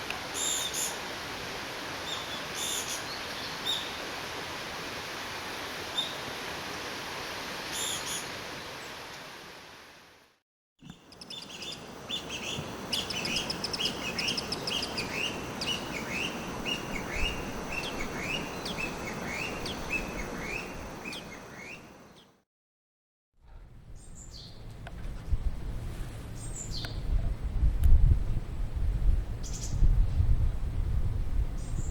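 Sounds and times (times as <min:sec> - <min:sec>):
bird high falling calls: 0:10.8 - 0:22.3.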